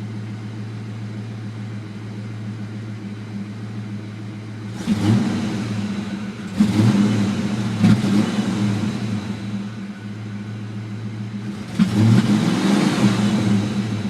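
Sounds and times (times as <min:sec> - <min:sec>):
car engine idling: 0:00.0 - 0:14.0.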